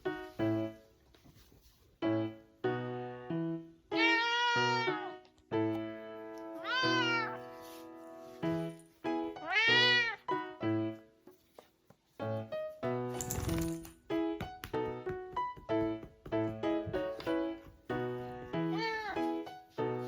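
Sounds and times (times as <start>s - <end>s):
piano music: 0.0s - 20.0s
cat meowing: 3.9s - 5.2s, 6.6s - 7.4s, 9.4s - 10.3s, 18.6s - 19.3s.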